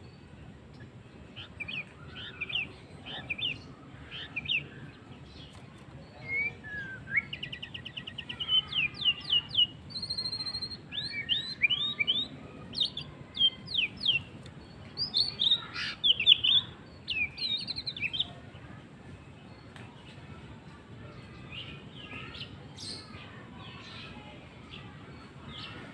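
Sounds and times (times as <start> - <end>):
bird singing whistled song: 6.1 - 18.3.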